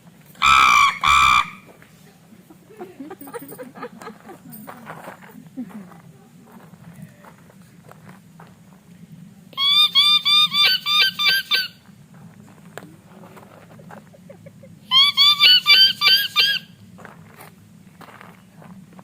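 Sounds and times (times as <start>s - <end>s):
man imitating a bird call: 0.4s - 1.6s.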